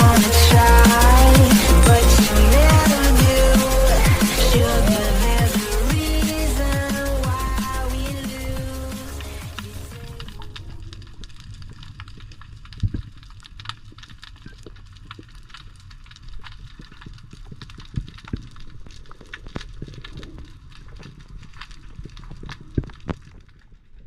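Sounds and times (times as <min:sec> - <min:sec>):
sharp clicks and crackles: 0:00.0 - 0:24.0
underwater low rumble: 0:10.0 - 0:24.0.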